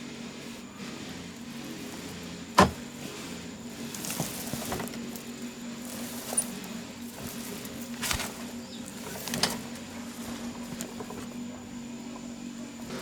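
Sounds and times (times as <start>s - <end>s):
steady low hum: 0.0s - 13.0s
knocks and clicks on motorbike: 2.6s - 3.0s.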